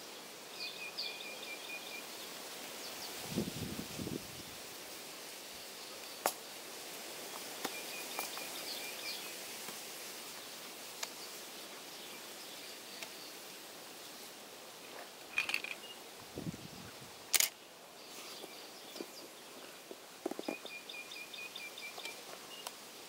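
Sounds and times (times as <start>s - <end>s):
faint steady hiss: 0.0s - 23.0s
faint high bird chirps: 20.4s - 22.7s.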